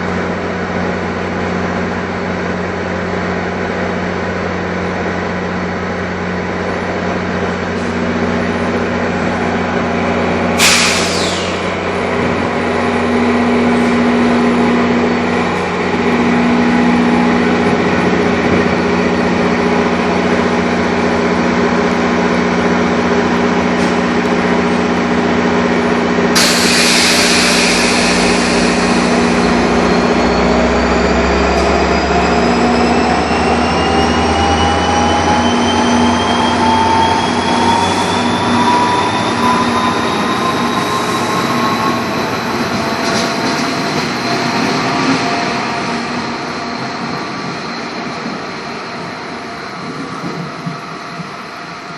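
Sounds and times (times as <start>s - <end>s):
train low hum: 0.0s - 51.9s
train whine rising in pitch: 0.0s - 51.9s
air release hiss: 10.6s - 11.9s, 26.4s - 30.2s.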